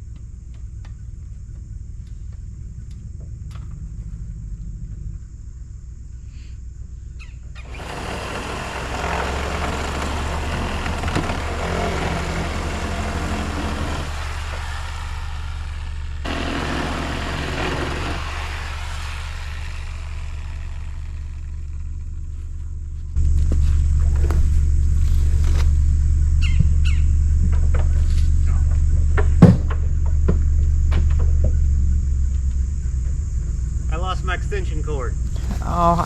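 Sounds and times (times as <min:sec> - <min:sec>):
reciprocating saw cutting wood: 0:07.6 - 0:22.6, 0:35.3 - 0:36.0
truck engine humming: 0:07.6 - 0:27.5, 0:35.1 - 0:36.0.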